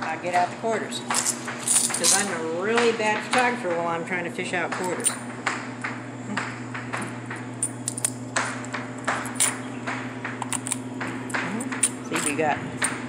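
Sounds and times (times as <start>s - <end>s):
low electrical hum: 0.0s - 13.0s
coins clinking: 1.1s - 2.4s, 4.8s - 5.3s, 7.6s - 9.6s, 10.4s - 12.9s.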